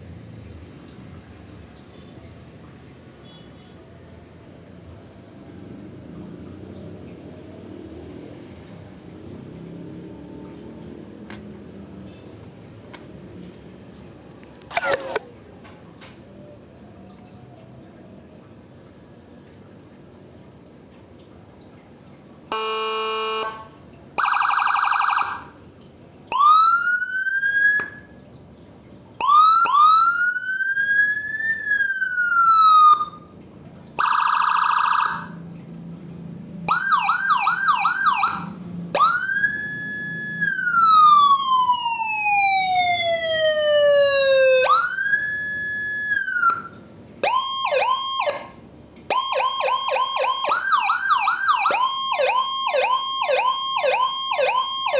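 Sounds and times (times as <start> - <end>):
siren wailing: 14.7 - 15.3, 22.5 - 23.6, 24.2 - 25.6, 26.3 - 28.1, 29.2 - 33.3, 34.0 - 35.4, 36.7 - 54.9
siren yelp warbles: 14.7 - 15.3, 22.5 - 25.6, 26.3 - 28.1, 29.2 - 33.3, 34.0 - 35.4, 36.7 - 54.9
buzzy siren horn blasts: 22.5 - 24.6.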